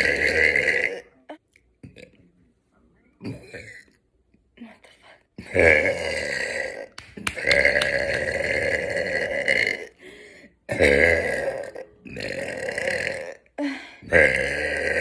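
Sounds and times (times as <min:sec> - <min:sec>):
woman burping: 0:00.0 - 0:02.1, 0:03.2 - 0:04.0, 0:05.4 - 0:10.0, 0:10.7 - 0:15.0.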